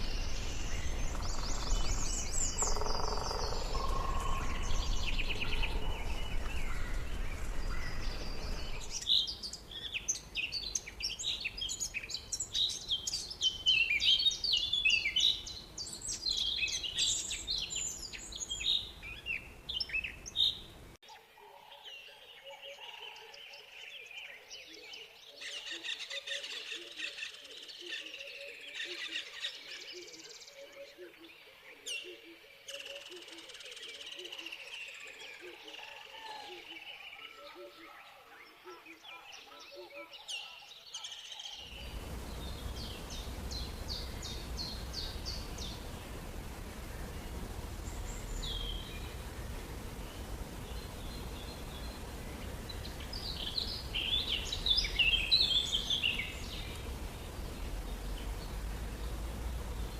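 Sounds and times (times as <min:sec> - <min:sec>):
rapid repeated low calls: 0:00.0 - 0:09.0, 0:41.7 - 0:59.9
birds chirping: 0:00.0 - 0:21.0, 0:36.8 - 0:59.9.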